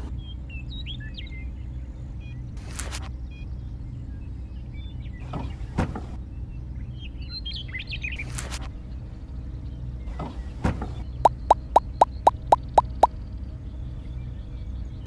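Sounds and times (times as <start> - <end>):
quick plops: 11.3 - 13.1.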